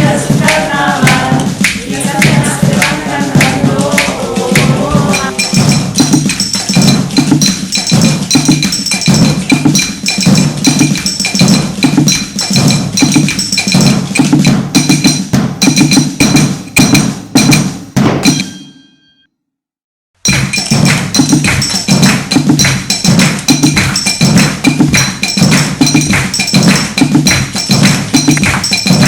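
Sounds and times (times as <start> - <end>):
low drum-like beat: 0.0 - 18.4, 20.3 - 29.0
fast strikes on household utensils: 0.0 - 18.6, 20.2 - 29.0
ringing metallic tone: 4.6 - 14.3, 18.2 - 19.3.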